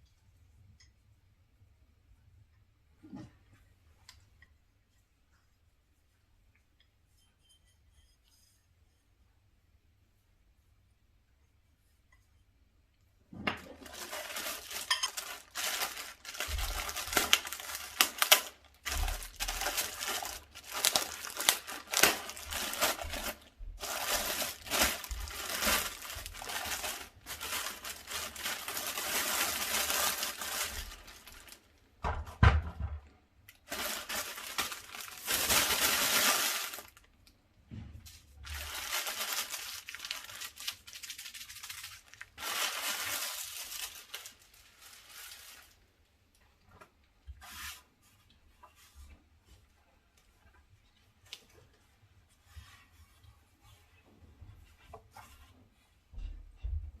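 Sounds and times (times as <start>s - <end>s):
plastic wrap crinkling: 13.6s - 31.9s, 33.5s - 37.3s, 38.1s - 46.0s.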